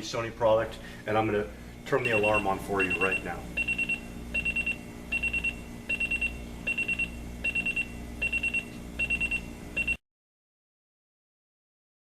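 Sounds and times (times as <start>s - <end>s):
alarm clock beeping: 2.0s - 10.0s.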